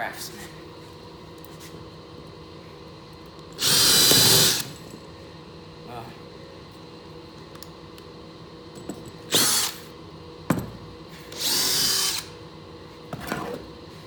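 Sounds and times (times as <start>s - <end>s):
power drill whirring: 3.6s - 4.7s, 9.3s - 9.9s, 11.3s - 12.4s.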